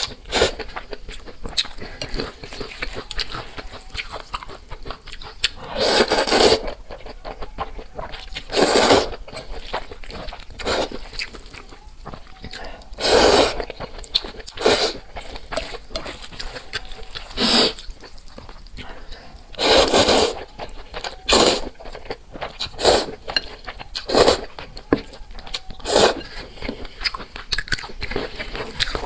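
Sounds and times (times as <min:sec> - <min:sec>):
wet chewing: 0:00.0 - 0:29.0
noodle slurps: 0:05.7 - 0:06.7, 0:08.5 - 0:09.2, 0:13.0 - 0:13.6, 0:17.2 - 0:17.9, 0:19.5 - 0:20.4.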